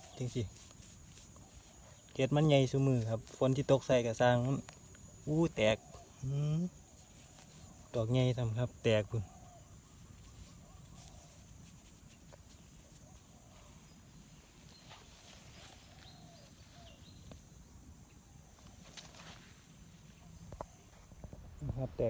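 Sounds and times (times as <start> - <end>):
high insect drone: 0.0 - 22.0
distant animal calls: 5.6 - 6.5, 8.9 - 11.7
leaf litter rustling: 10.0 - 17.2.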